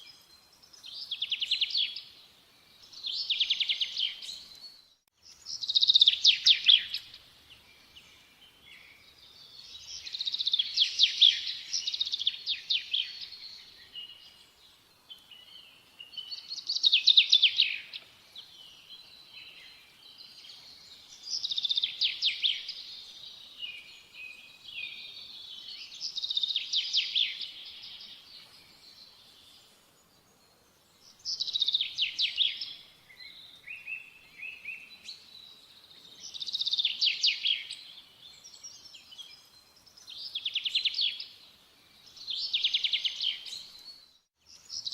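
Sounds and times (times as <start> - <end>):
soft bird chirps: 0.0 - 44.9.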